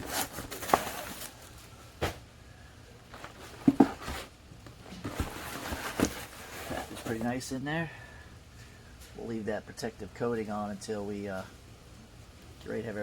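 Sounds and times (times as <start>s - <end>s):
plastic headlamp knocks and rustles: 3.2s - 4.3s.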